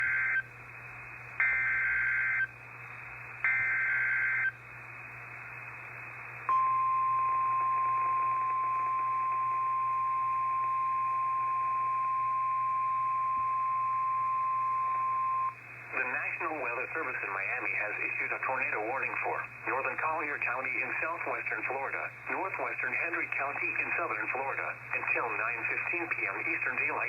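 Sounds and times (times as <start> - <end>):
steady warning alarm tone: 1.4 - 2.5, 3.4 - 4.5.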